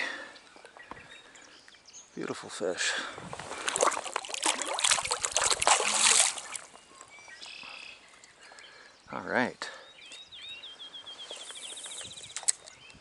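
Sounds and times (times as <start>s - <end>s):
water splashing and sloshing: 3.2s - 6.9s.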